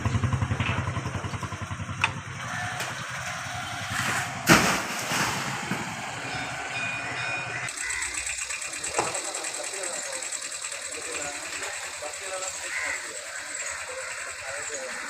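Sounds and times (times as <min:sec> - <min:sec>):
small engine running unevenly: 0:00.0 - 0:04.6, 0:05.4 - 0:15.0
loud sharp impact: 0:04.1 - 0:06.0.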